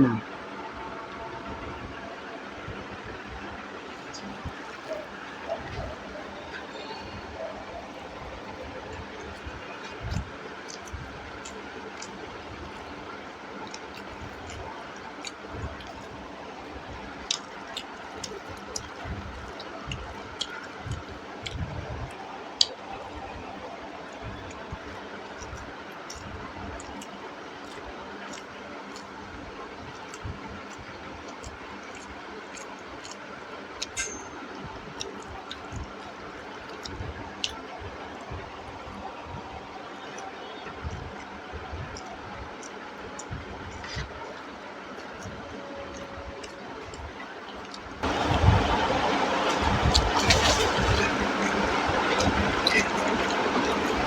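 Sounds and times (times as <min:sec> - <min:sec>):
person chewing food: 0:04.5 - 0:16.4, 0:17.0 - 0:22.8, 0:25.4 - 0:34.3, 0:41.2 - 0:48.4
steady background hiss: 0:42.4 - 0:54.0.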